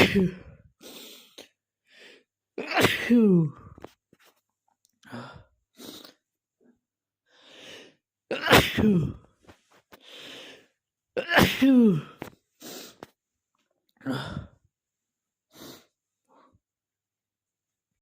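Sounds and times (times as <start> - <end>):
man sneezing: 0.0 - 0.6, 2.6 - 3.7, 8.3 - 9.3, 11.2 - 12.3
breathy in-breaths: 0.2 - 2.3, 5.0 - 6.3, 7.3 - 8.0, 9.9 - 10.8, 14.0 - 14.7.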